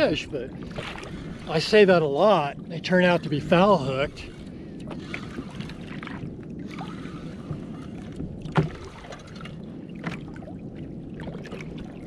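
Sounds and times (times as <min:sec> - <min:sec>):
water around kayak: 0:00.0 - 0:12.0
knocks on boat: 0:08.4 - 0:08.9.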